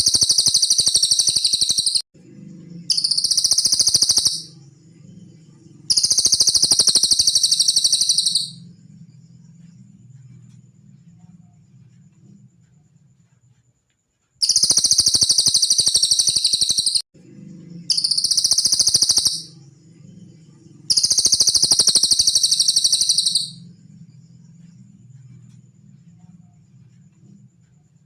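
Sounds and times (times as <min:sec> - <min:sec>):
bird trilling: 0:00.0 - 0:02.0, 0:02.9 - 0:04.6, 0:05.9 - 0:08.6, 0:14.4 - 0:17.0, 0:17.9 - 0:19.6, 0:20.9 - 0:23.6
faint low hum: 0:02.2 - 0:14.8, 0:17.2 - 0:28.0.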